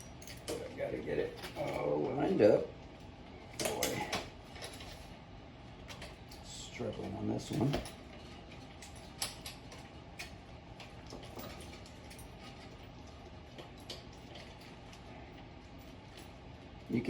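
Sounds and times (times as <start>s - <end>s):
metal parts clicking: 7.5s - 12.9s.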